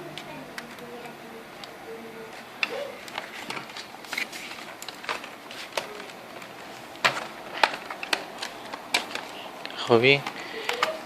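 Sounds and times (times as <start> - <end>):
plastic laptop clips snapping: 4.7 - 11.0.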